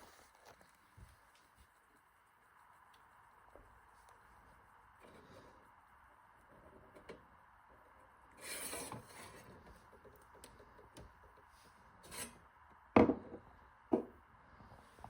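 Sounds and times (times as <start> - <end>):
scraping rubbing handling noise: 8.4 - 9.8, 11.5 - 12.4.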